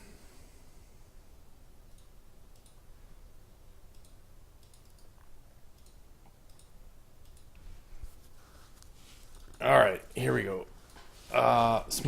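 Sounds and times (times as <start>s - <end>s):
low room hum: 0.0s - 12.0s
computer mouse clicks: 1.8s - 2.9s, 3.8s - 7.6s, 8.8s - 9.6s.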